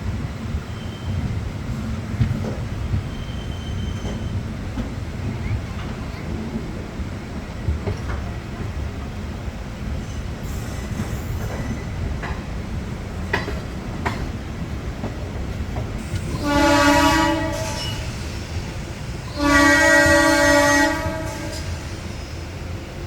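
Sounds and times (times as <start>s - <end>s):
train rumbling: 0.0s - 23.0s
train horn blasts: 16.2s - 18.1s, 19.3s - 21.9s.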